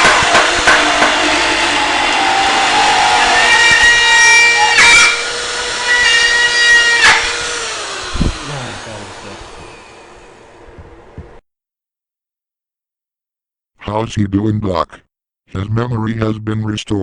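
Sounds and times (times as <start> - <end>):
electric power tool whining: 0.0 - 11.4.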